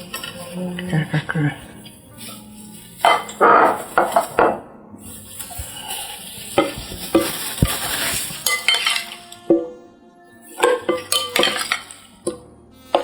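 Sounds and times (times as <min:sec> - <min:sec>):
rustling scrape: 0:00.0 - 0:04.4, 0:05.0 - 0:09.3
utensils clinking against dishes: 0:00.0 - 0:09.7, 0:10.4 - 0:13.0.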